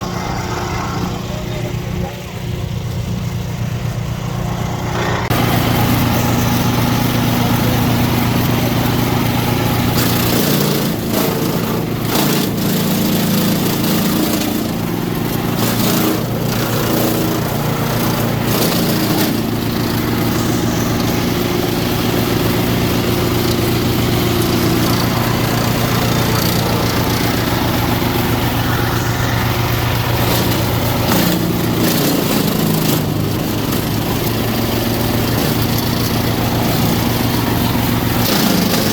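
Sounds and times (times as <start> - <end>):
wood chipper engine running: 0.0 - 38.9.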